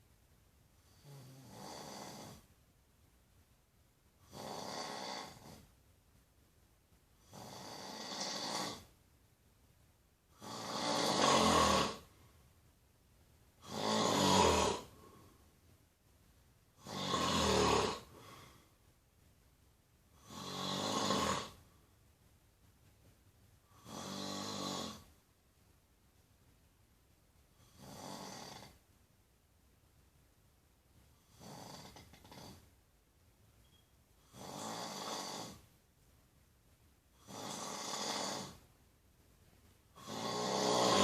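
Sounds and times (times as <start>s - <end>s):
person snoring: 0.8s - 2.4s, 4.2s - 5.6s, 7.2s - 8.9s, 10.3s - 12.1s, 13.6s - 15.2s, 16.8s - 18.6s, 20.2s - 21.6s, 23.7s - 25.1s, 27.6s - 28.8s, 31.2s - 32.6s, 34.2s - 35.6s, 37.2s - 38.6s, 40.0s - 41.0s.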